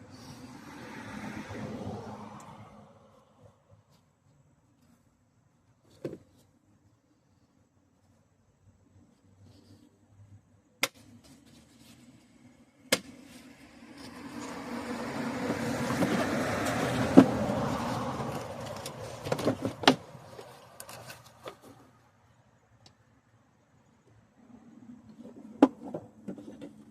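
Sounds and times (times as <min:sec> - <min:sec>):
car passing: 0:00.0 - 0:03.9, 0:13.2 - 0:20.9.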